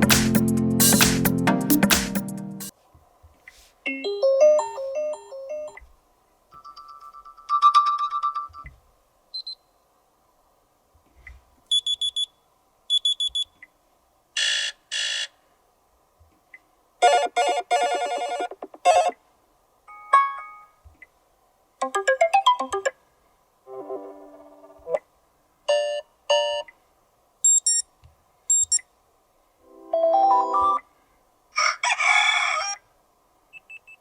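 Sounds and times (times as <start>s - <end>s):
smartphone alarm tones: 27.5s - 27.9s.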